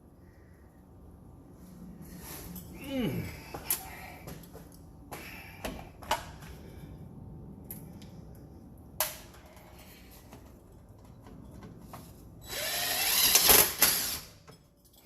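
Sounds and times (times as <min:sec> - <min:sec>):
power drill spinning up: 0:12.4 - 0:14.3.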